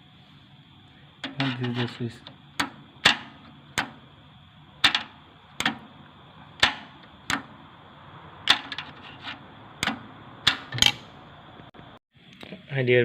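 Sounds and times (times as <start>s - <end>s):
clicks and knocks of hands working: 1.2s - 4.0s, 4.8s - 5.9s, 6.6s - 7.5s, 8.5s - 11.1s.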